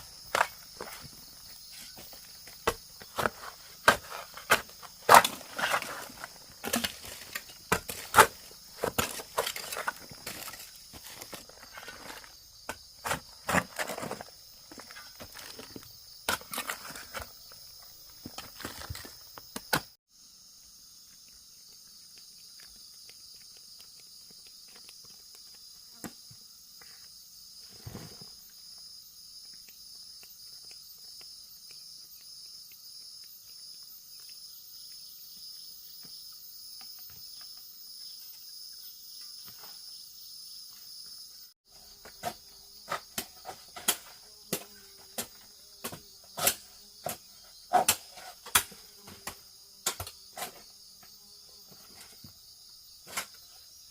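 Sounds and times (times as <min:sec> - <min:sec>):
insects trilling: 0:00.0 - 0:53.9.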